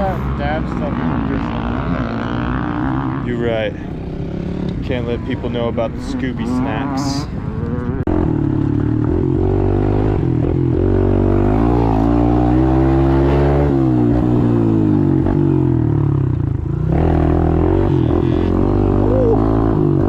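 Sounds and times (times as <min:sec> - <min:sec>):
dirt bike engine revving: 0:00.0 - 0:20.0.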